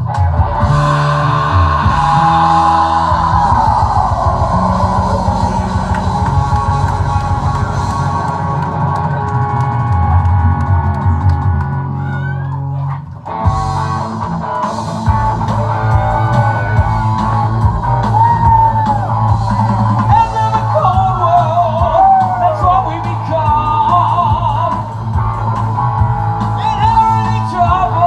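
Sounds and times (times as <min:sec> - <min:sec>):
rock band playing: 0:00.0 - 0:28.0
lead guitar bending notes: 0:00.3 - 0:11.8.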